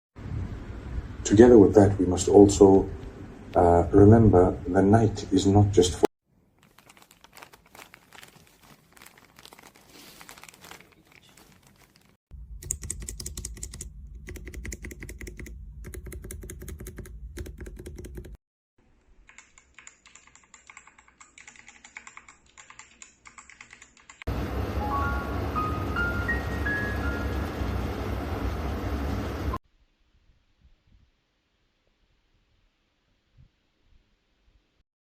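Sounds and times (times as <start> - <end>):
mechanical keyboard typing: 12.6 - 18.4, 19.2 - 24.3.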